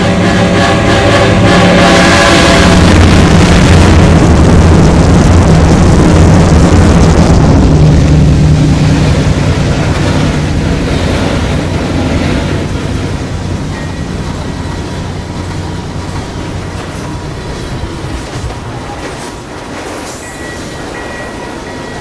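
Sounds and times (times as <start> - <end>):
diesel locomotive passing: 0.0 - 22.0.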